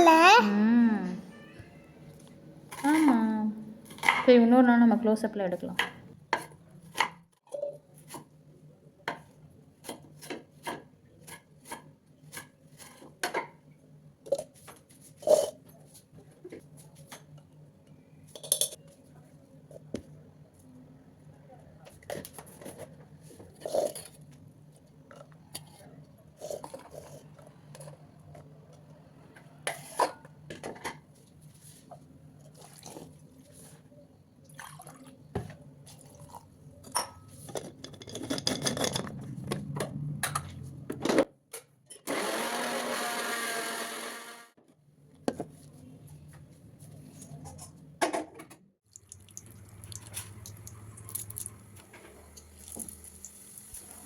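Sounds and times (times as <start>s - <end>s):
utensils clattering: 37.0s - 39.2s.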